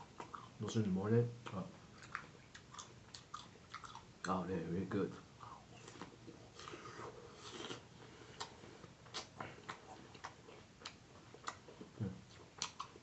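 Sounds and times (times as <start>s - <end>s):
wet chewing clicks: 1.4s - 4.4s, 8.4s - 13.0s.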